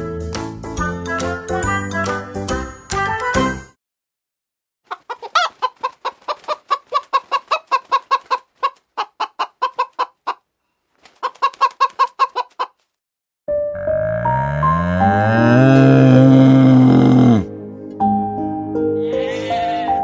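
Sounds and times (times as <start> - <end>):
chicken clucking: 4.9 - 10.5, 11.1 - 12.8.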